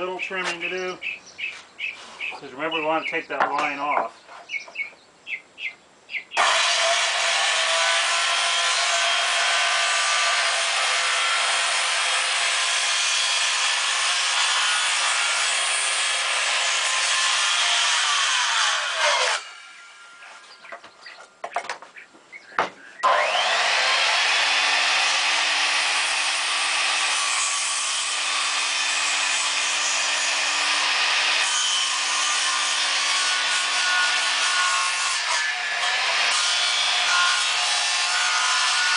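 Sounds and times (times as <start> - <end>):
power tool cutting wood: 6.4 - 20.3, 23.0 - 38.9
knocks: 22.5 - 22.8.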